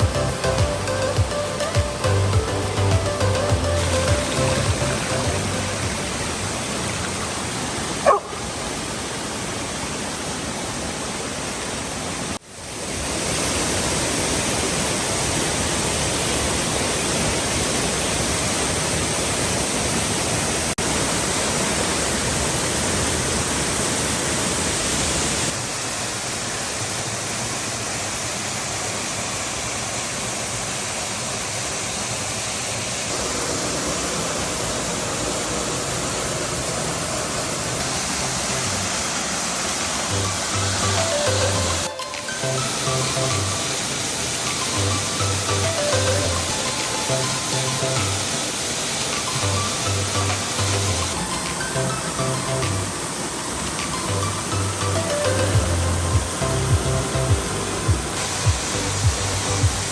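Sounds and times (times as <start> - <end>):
waterfall rushing: 0.0 - 59.9
dog yelping: 8.0 - 8.4.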